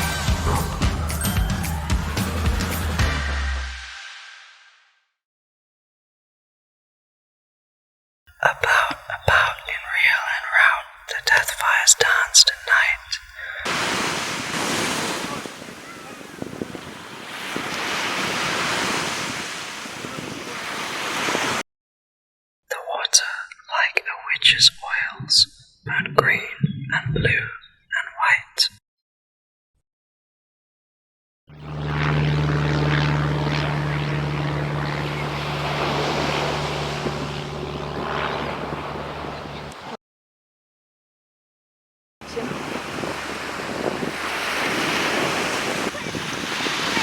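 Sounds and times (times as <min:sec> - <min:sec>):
steady engine drone: 0:00.0 - 0:03.8, 0:31.5 - 0:39.9
wind noise: 0:11.4 - 0:21.6, 0:31.6 - 0:39.9, 0:42.3 - 0:47.0
sea waves washing in: 0:12.2 - 0:21.6, 0:31.6 - 0:40.0, 0:42.2 - 0:47.0.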